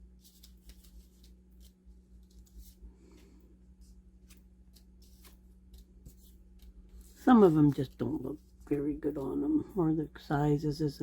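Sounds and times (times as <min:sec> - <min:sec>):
paper rustling: 0:00.0 - 0:08.6.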